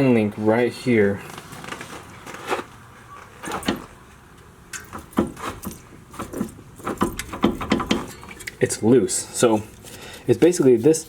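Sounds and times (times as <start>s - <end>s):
suspension link knocking and rattling: 3.4s - 4.0s, 4.7s - 8.5s.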